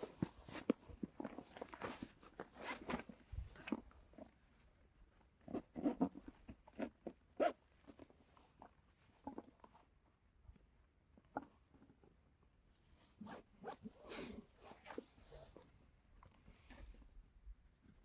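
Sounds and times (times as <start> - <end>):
rustling and crunching: 0.0 - 4.7.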